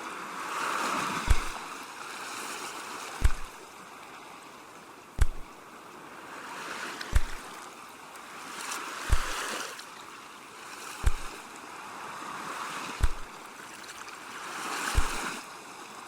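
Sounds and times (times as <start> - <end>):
ocean waves washing: 0.8 - 1.9, 3.1 - 3.7, 6.6 - 7.6, 9.0 - 9.8, 11.0 - 11.5, 12.3 - 13.6, 14.6 - 15.4
sharp low thump: 1.3 - 1.7, 3.2 - 3.6, 5.2 - 5.5, 7.2 - 7.4, 9.1 - 9.4, 11.0 - 11.4, 13.0 - 13.4, 15.0 - 15.3.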